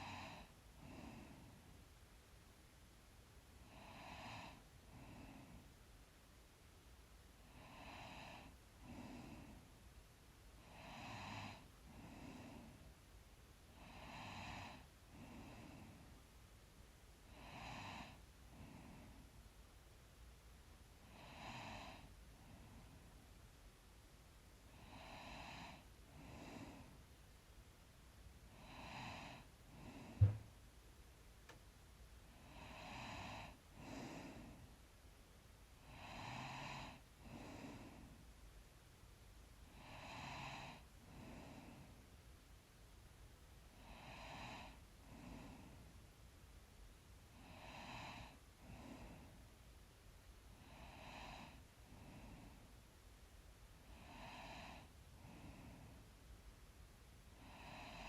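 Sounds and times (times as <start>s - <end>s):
person breathing in sleep: 0.0s - 1.8s, 3.6s - 5.8s, 7.4s - 9.8s, 10.6s - 13.0s, 13.7s - 16.3s, 17.3s - 19.4s, 21.0s - 23.3s, 24.7s - 27.0s, 28.5s - 30.5s, 32.3s - 34.8s, 35.8s - 38.3s, 39.6s - 42.0s, 43.8s - 46.0s, 47.3s - 49.6s, 50.5s - 52.8s, 53.8s - 56.1s, 57.3s - 58.0s
low thump: 30.2s - 30.5s.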